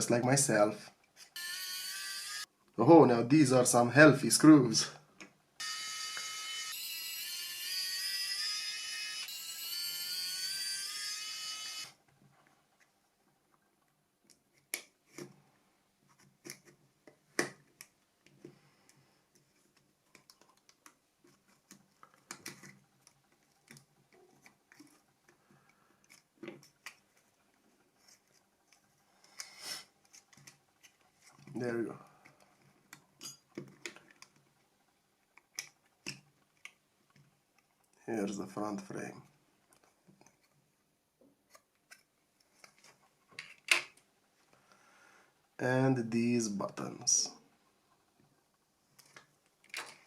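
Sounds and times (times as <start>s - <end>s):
electric screwdriver whining: 5.6s - 12.0s
small parts clicking and tapping: 35.2s - 38.0s.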